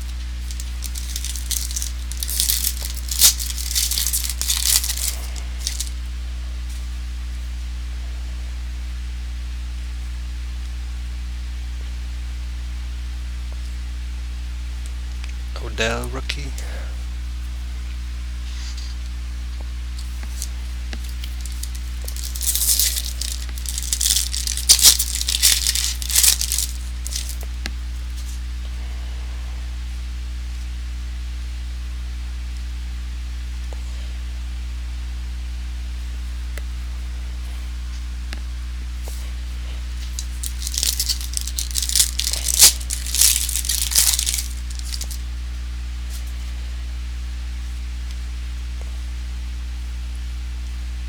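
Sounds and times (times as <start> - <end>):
wrapper tearing and crinkling: 0.0 - 6.0, 20.0 - 27.4, 40.0 - 45.2
low electrical hum: 0.0 - 51.0.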